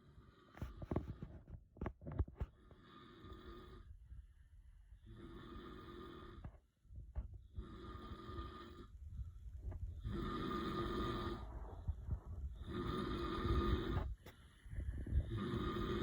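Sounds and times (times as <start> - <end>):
man snoring: 5.1 - 6.4, 7.6 - 8.9, 10.0 - 11.4, 12.6 - 14.0, 15.2 - 16.0.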